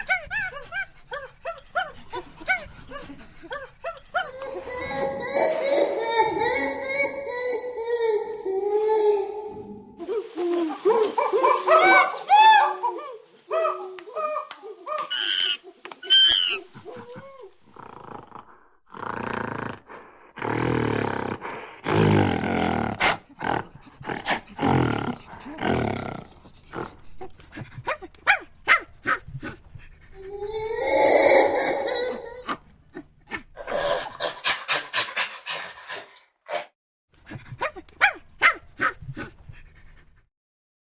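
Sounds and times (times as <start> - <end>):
monkeys hoarse rasping calls: 0.0 - 22.5, 23.4 - 36.0
wavering monkey call: 10.9 - 17.4
monkeys chattering: 13.7 - 18.2.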